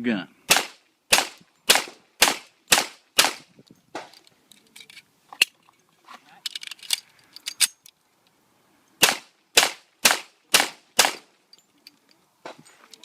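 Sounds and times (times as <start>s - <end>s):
pistol shots: 0.5s - 3.4s, 9.0s - 11.3s.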